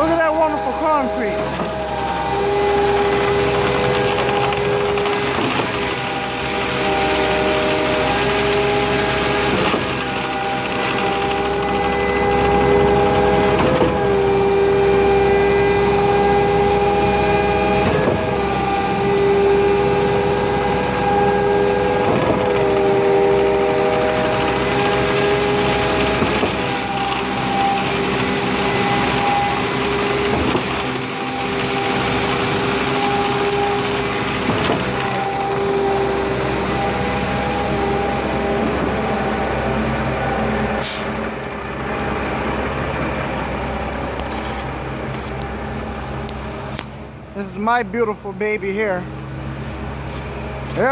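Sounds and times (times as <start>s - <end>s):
concrete pump drone: 0.0s - 50.9s
pump knock: 2.8s - 14.3s, 21.9s - 35.9s.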